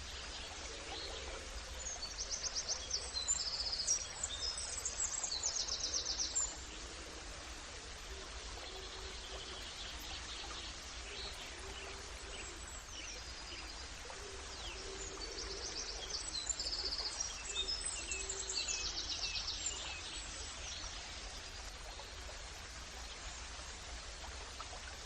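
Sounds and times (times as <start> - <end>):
flowing stream: 0.0 - 25.0
songbirds singing and chirping: 8.5 - 22.4.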